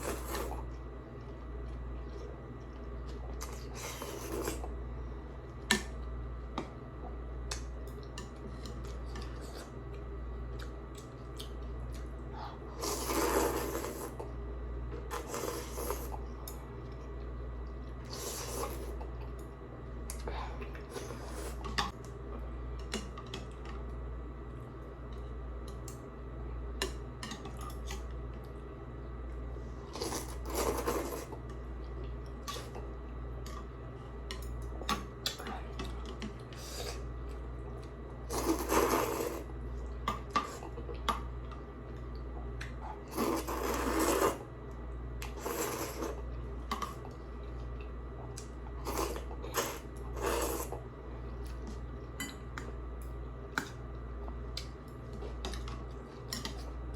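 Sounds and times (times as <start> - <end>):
steady low hum: 0.0 - 56.9.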